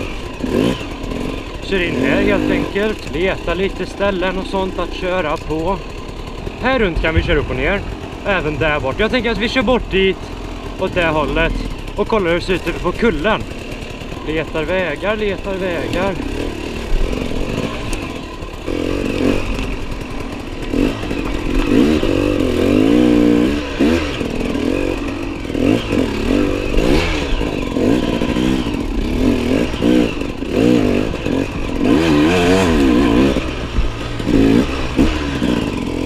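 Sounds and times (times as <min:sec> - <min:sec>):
motorcycle engine revving: 0:00.0 - 0:36.0.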